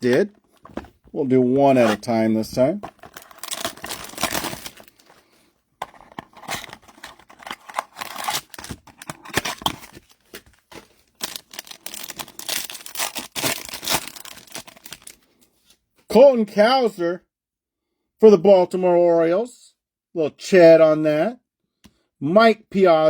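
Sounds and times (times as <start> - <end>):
cards rustling and clicking: 0.0 - 15.2
wrapper crinkling and tearing: 2.8 - 5.2, 6.3 - 15.2.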